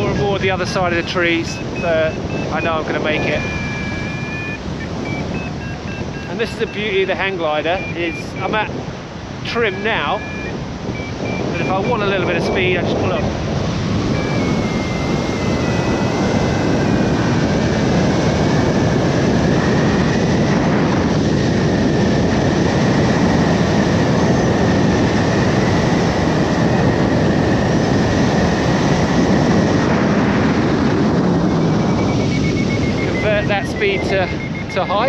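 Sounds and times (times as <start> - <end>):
variometer beeping: 0.0 - 13.2, 13.9 - 35.0
wind rushing over microphone: 0.0 - 35.0
high whistle: 1.8 - 8.6, 14.2 - 17.0, 31.5 - 35.0.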